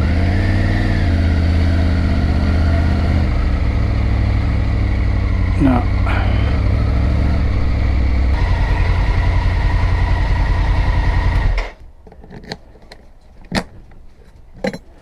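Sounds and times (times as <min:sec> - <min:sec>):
motorcycle engine idling: 0:00.0 - 0:11.8
sharp clicks and knocks: 0:11.6 - 0:15.0.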